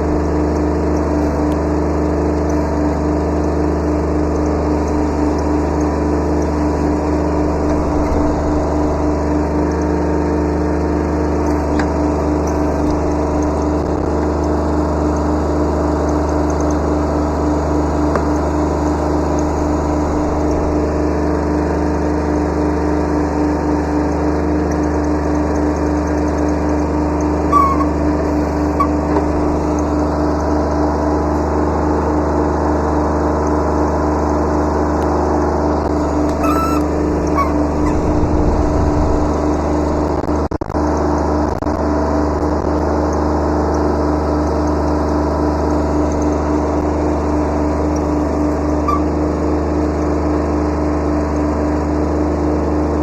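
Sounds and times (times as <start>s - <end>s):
tractor diesel engine running: 0.0s - 41.4s, 43.4s - 51.4s
brief high squeaks: 6.8s - 9.2s, 11.5s - 13.6s, 19.2s - 21.1s, 27.4s - 30.0s, 35.9s - 40.0s, 48.5s - 49.2s.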